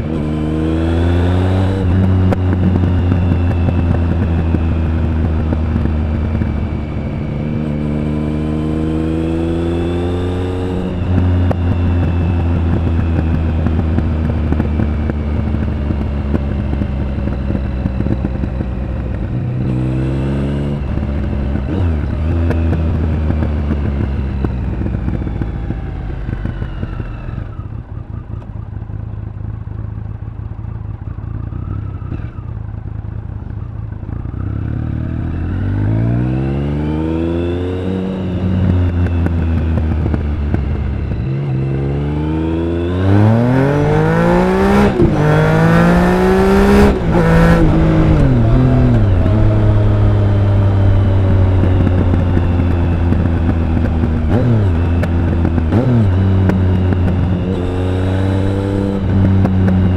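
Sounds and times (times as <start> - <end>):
motorcycle engine accelerating: 0.0 - 59.9.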